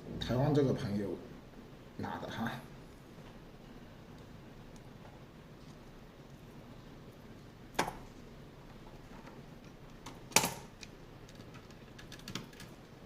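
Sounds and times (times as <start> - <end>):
computer parts clicking and knocking: 9.0 - 12.9.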